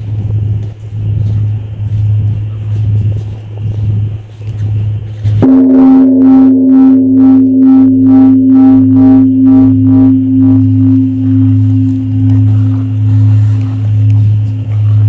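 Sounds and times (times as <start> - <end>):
bronze bell ringing: 5.4 - 15.0.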